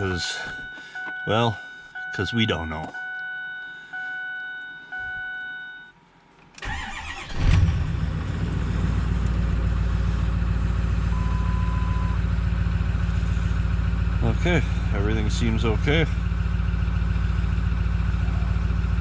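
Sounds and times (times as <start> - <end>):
dashboard warning chime: 0.0 - 6.0
diesel engine cranking and starting: 6.4 - 19.0
diesel engine idling: 6.6 - 19.0.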